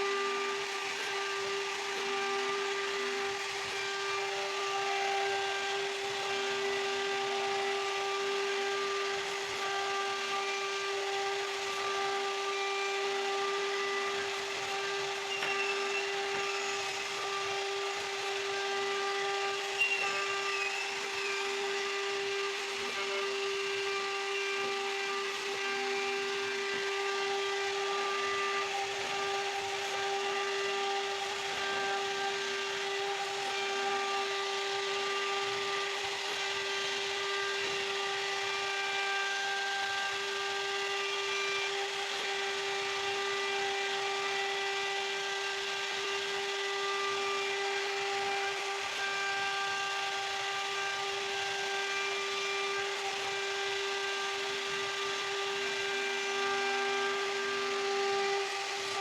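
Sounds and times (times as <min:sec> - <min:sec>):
hiss of wood cutting: 0:00.0 - 0:59.0
router spindle whine: 0:00.0 - 0:59.0.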